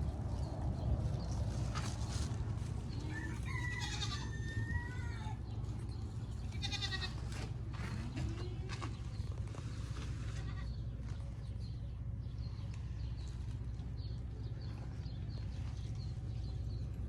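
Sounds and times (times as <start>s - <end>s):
low rumble: 0.0s - 4.0s
goats bleating: 3.8s - 5.4s, 6.5s - 8.8s, 10.3s - 10.8s.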